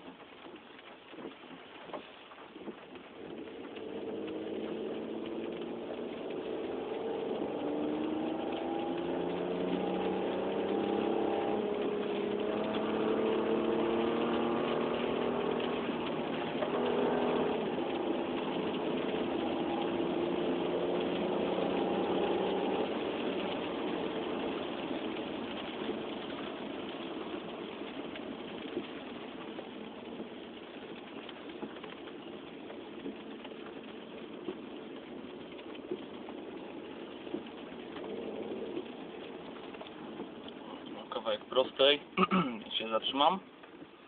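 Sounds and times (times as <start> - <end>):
car engine running: 0.0 - 44.0.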